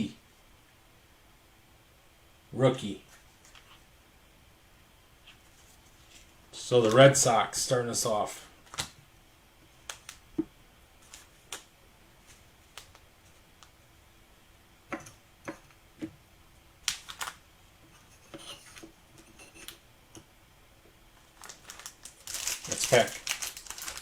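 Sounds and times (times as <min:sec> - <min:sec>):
trading cards handled on table: 0:09.8 - 0:13.7.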